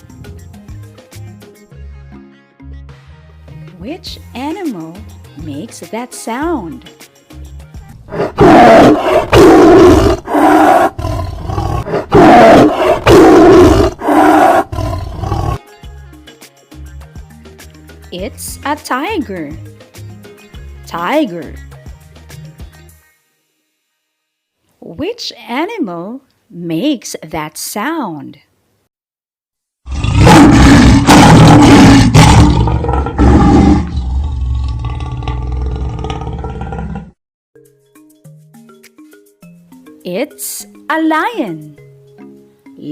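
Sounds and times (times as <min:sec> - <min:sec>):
tiger roaring: 0:08.1 - 0:15.6, 0:29.9 - 0:37.2.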